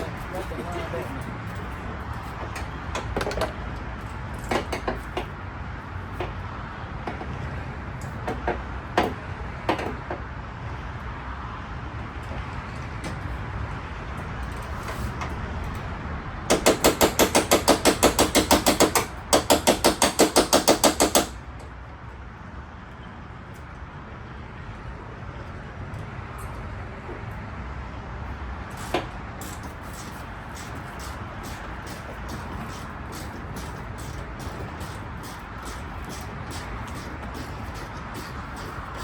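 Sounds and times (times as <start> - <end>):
tool clinks and knocks: 0.0 - 5.3
impact wrench hammering: 16.5 - 21.4, 28.8 - 39.0.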